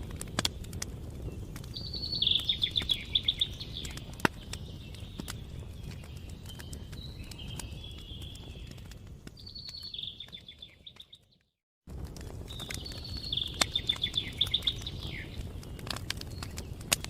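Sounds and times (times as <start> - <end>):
wood fire crackling and popping: 0.0 - 17.0
songbird trilling: 1.8 - 4.1, 12.8 - 15.4.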